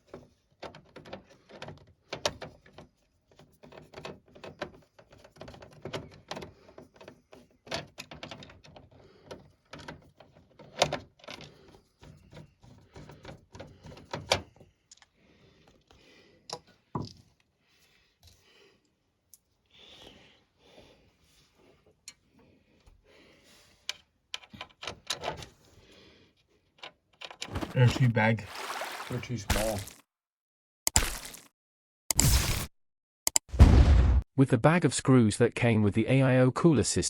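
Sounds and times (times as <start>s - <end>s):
screwdriver and small parts clicking: 23.8s - 25.5s.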